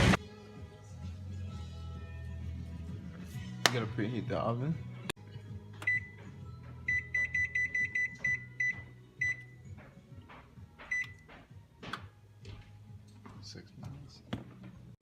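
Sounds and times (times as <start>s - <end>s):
oven control panel beeping: 5.8s - 6.2s, 6.8s - 9.6s.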